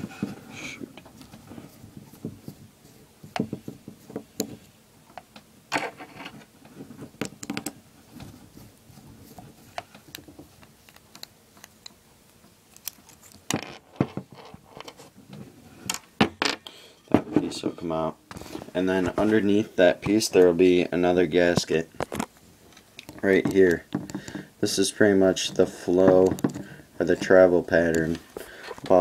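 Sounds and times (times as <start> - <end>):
screwdriver clicks and scrapes: 12.7 - 13.4.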